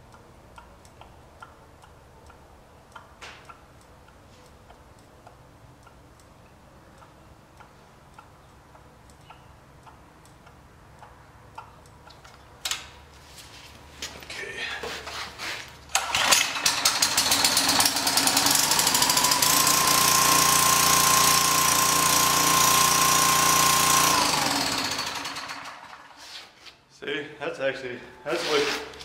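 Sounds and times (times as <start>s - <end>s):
faint regular ticking: 0.0s - 12.4s
recoil starter cord pulled: 15.9s - 26.2s.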